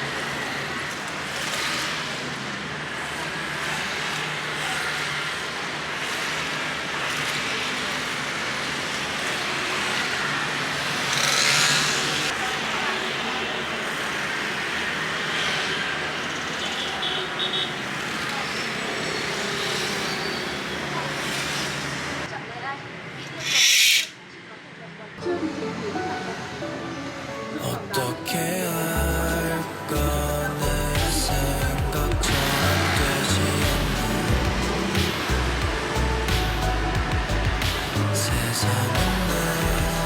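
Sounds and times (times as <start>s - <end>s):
road traffic: 0.0s - 40.0s
vehicle passing: 29.0s - 40.0s.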